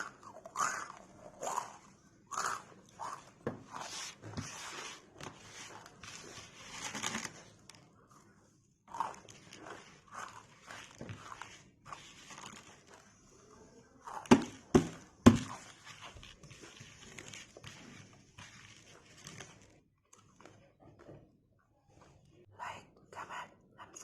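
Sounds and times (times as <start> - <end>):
chewing crunchy snack: 0.0 - 3.8, 8.9 - 13.3.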